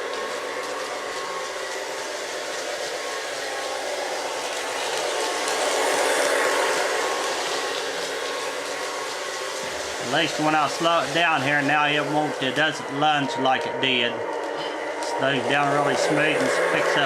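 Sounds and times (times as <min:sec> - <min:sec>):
model train motor hum: 0:00.0 - 0:17.0
wheels rolling on rails: 0:00.0 - 0:17.0.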